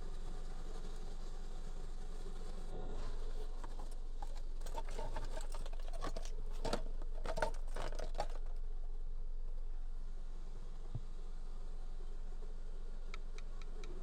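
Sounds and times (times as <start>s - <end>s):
soft scratchy rustles: 2.4s - 8.6s.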